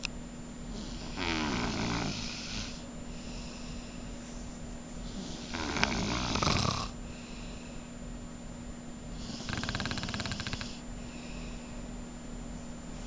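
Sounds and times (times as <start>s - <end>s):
person snoring: 0.7s - 3.7s, 5.1s - 7.0s, 9.2s - 10.8s.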